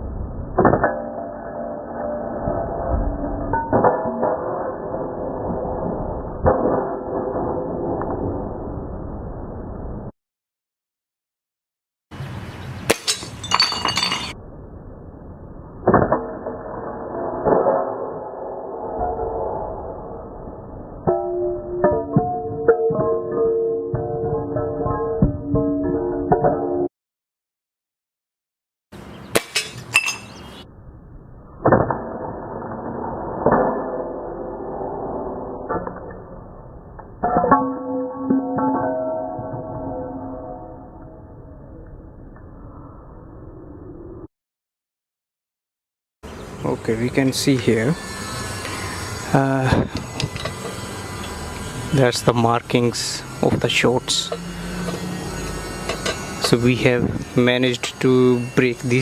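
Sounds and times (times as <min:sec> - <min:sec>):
tile pieces clinking and rattling: 0:13.1 - 0:14.4.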